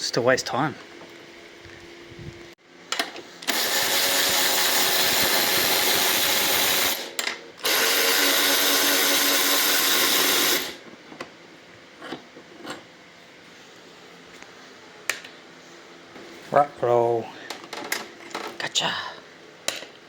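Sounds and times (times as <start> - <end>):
electric ratchet spinning: 3.4 - 10.8.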